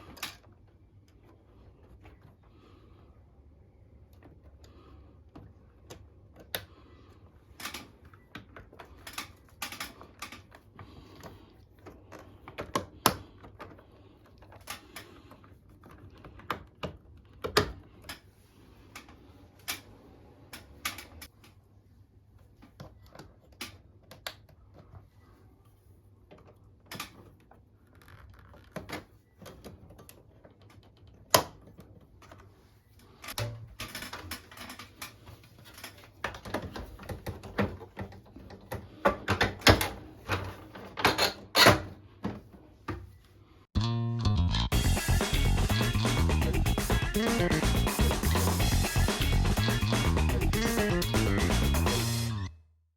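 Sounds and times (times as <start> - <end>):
plastic parts clicking: 7.5 - 18.3.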